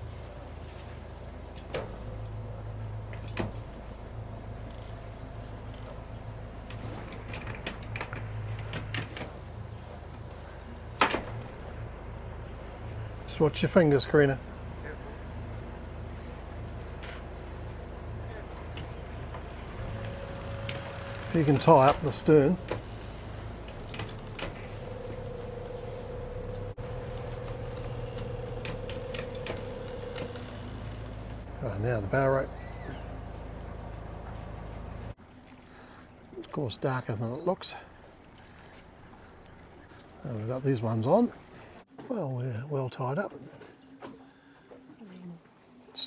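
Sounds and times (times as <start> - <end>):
boat engine idling hum: 0.0 - 46.0
mid-pitched whine: 24.1 - 32.4.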